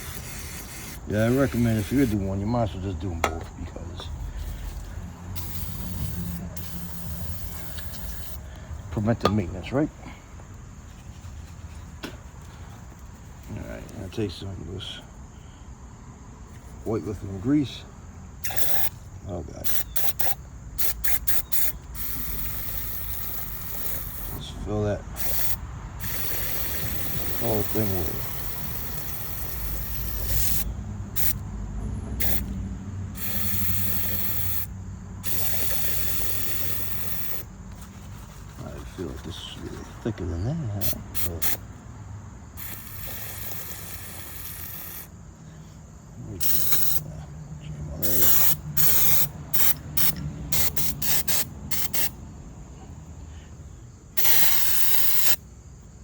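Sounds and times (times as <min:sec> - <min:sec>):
aerosol can spraying: 0:00.0 - 0:02.3, 0:05.4 - 0:08.4, 0:18.4 - 0:19.0, 0:19.6 - 0:24.4, 0:25.2 - 0:31.4, 0:32.2 - 0:32.5, 0:33.2 - 0:38.4, 0:40.8 - 0:41.6, 0:42.6 - 0:45.1, 0:46.4 - 0:47.0, 0:48.0 - 0:52.2, 0:54.2 - 0:55.4.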